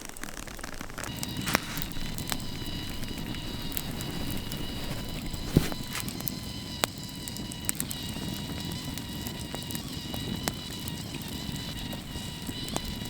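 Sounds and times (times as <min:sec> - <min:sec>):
campfire burning: 0:00.0 - 0:13.0
fire popping: 0:00.0 - 0:13.0
faint high whine: 0:00.9 - 0:13.0.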